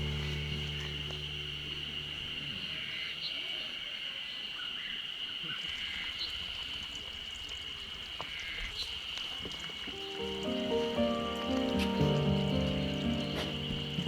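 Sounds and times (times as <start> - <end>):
background music: 0.0 - 2.5, 10.0 - 14.0
insect chorus: 0.0 - 14.0.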